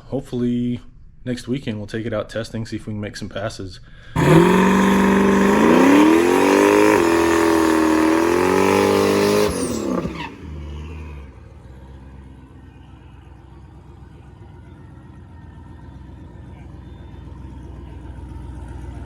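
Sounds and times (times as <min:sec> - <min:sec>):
car engine revving: 0:04.2 - 0:19.0
low engine hum: 0:04.2 - 0:19.0.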